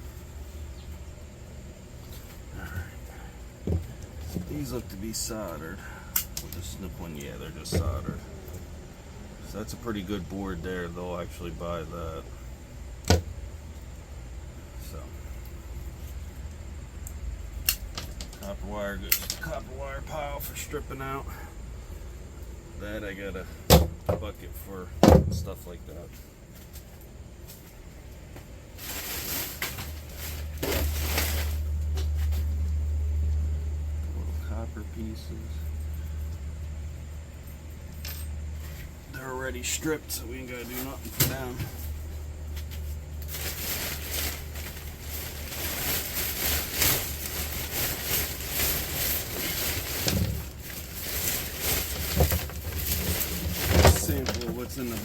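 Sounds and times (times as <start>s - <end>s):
steady low hum: 0.0s - 55.0s
steady low rumble: 24.3s - 52.0s
scrap metal rustling and clicking: 40.6s - 55.0s.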